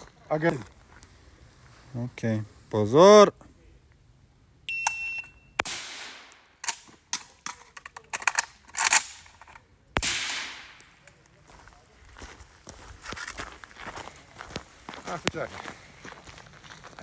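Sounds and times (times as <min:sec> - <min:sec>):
suppressed rifle shots: 0:05.6 - 0:06.9, 0:10.0 - 0:10.8.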